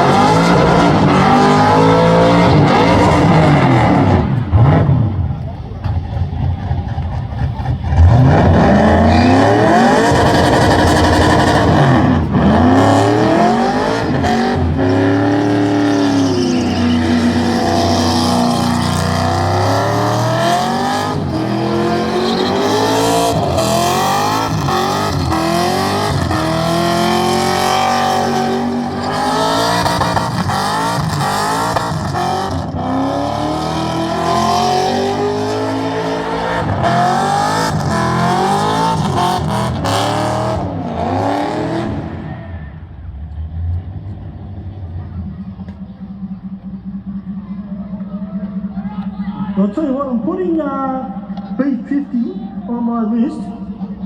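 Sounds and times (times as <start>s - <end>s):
car engine revving hard: 0.0s - 5.3s, 6.1s - 43.2s.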